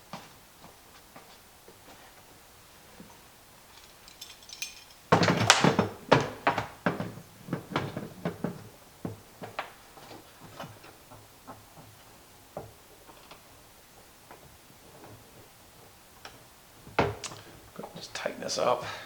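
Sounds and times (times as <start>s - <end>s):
metal clamps knocking and clattering: 3.7s - 7.1s.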